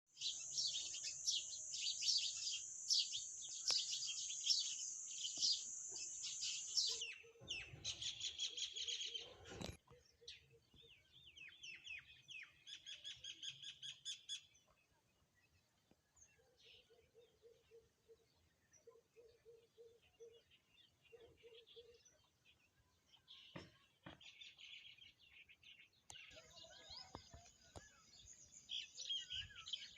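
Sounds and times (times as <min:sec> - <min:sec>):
songbirds chirping and trilling: 0:00.1 - 0:29.9.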